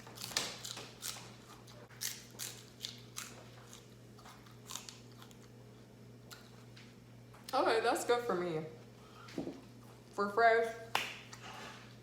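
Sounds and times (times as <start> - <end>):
celery crunching while chewed: 0.0 - 6.6.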